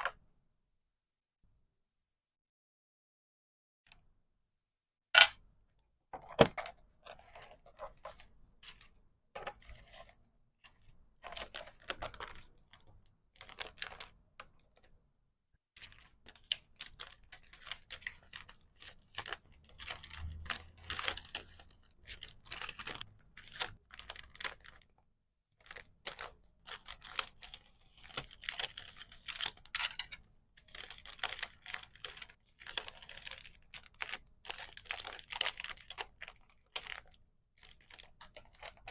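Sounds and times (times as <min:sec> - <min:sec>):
plastic wrap and paper crinkling: 0:15.8 - 0:24.9, 0:25.6 - 0:38.9.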